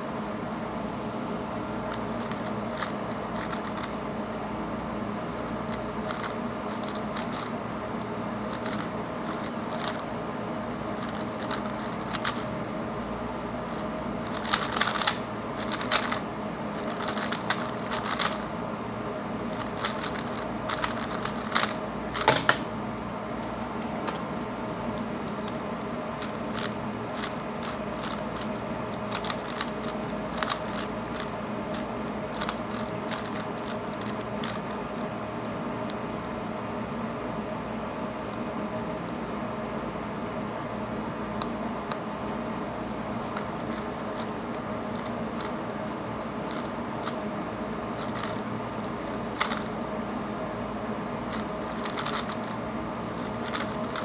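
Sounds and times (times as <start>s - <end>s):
steady hum: 0.0s - 54.0s
plastic cube clicking: 1.9s - 4.0s, 5.3s - 7.5s, 8.5s - 10.1s, 11.0s - 12.4s, 13.7s - 16.2s, 16.8s - 18.5s, 19.5s - 22.7s, 26.2s - 34.7s, 43.4s - 44.4s, 48.0s - 48.4s, 49.0s - 49.7s, 51.3s - 52.5s, 53.2s - 54.0s.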